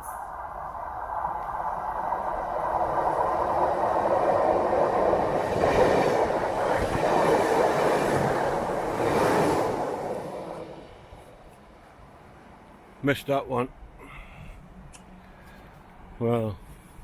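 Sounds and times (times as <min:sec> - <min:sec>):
train rumbling past: 0:00.0 - 0:13.2.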